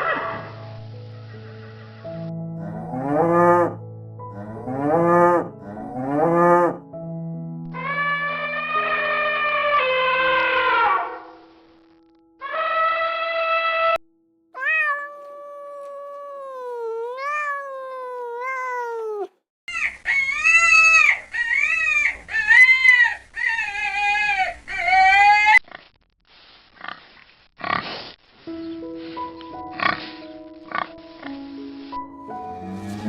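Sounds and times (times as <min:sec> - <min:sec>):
cat meowing: 0:14.6 - 0:19.4.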